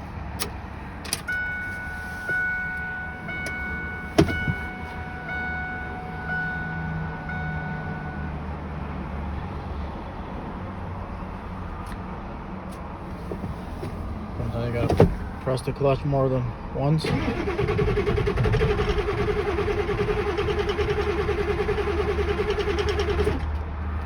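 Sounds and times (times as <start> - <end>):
dashboard warning chime: 1.2 - 8.6, 14.4 - 16.0.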